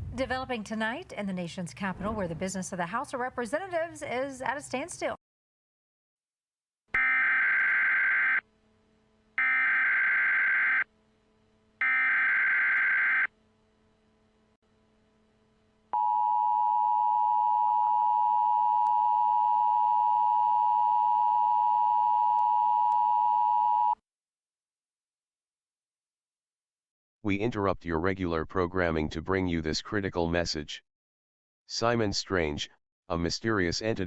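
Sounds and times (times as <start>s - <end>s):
short data bursts: 7.0s - 8.4s, 9.4s - 10.9s, 11.8s - 13.3s.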